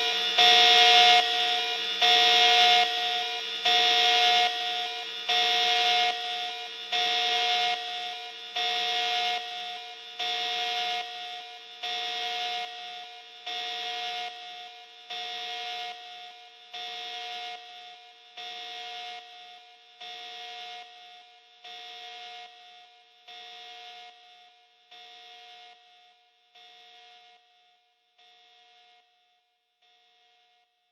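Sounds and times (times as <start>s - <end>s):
faint steady hum: 0.0s - 15.4s
harsh buzzing alarm tone: 0.0s - 17.8s.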